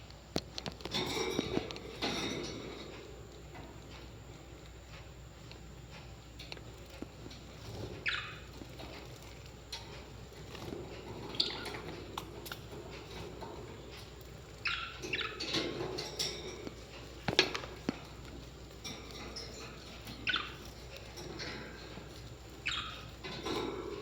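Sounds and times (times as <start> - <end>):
parrots chirping: 7.8 - 9.4, 10.7 - 24.0.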